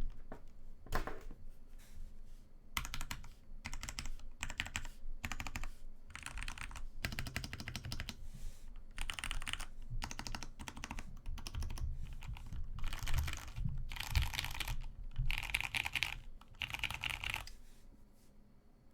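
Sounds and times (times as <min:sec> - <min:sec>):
mechanical keyboard typing: 0:02.8 - 0:08.2, 0:09.0 - 0:17.5.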